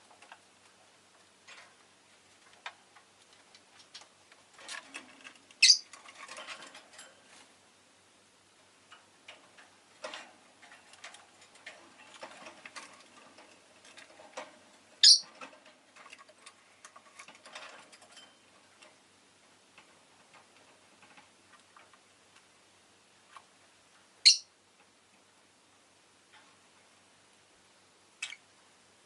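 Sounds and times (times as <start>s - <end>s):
bird high chirp: 5.6s - 5.8s, 15.0s - 15.3s, 24.2s - 24.5s.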